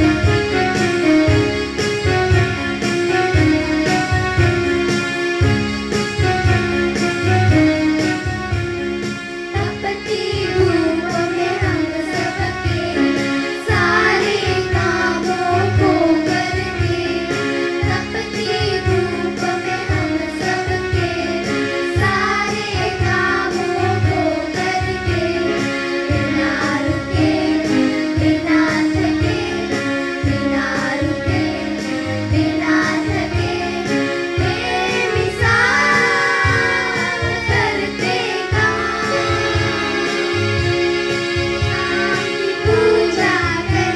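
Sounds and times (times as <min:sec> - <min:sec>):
instrumental accompaniment with beat: 0:00.0 - 0:43.9
children singing in a group: 0:09.5 - 0:43.9.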